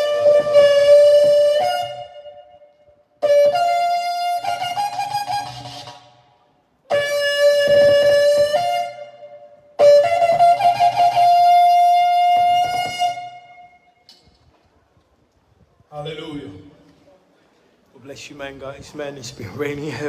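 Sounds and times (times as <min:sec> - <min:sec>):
ram's horn blasts: 0:00.0 - 0:06.3.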